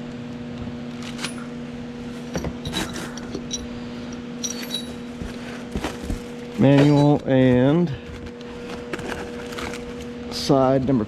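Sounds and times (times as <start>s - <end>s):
steady low hum: 0.0s - 11.0s
small parts clinking and rustling: 2.3s - 10.1s.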